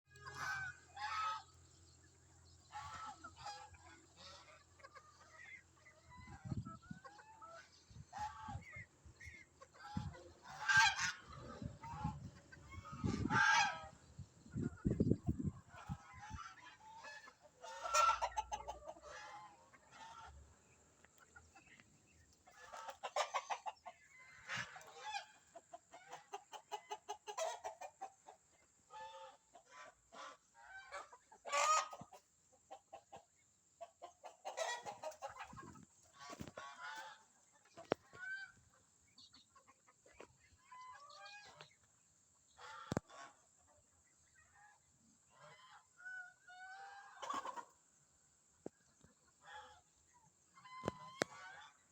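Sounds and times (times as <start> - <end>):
hen squawking and clucking: 0.1 - 1.5, 2.7 - 20.4, 22.4 - 28.2, 34.0 - 37.2
duck calls: 9.8 - 13.9.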